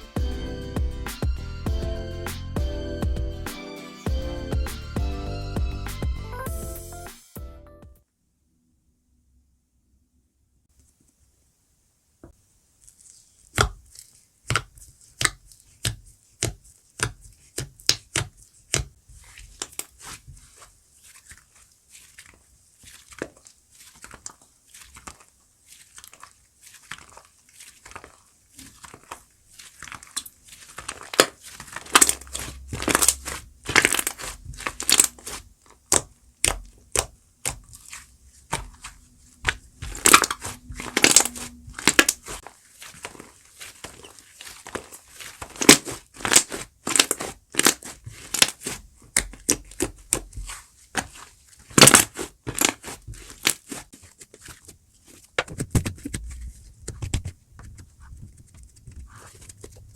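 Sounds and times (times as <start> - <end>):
crunchy slime squeezed by hand: 19.4 - 57.8.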